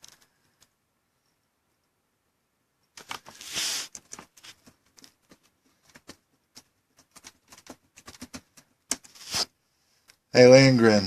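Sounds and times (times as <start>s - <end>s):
brief rustling hiss: 3.3s - 4.1s, 9.1s - 9.5s.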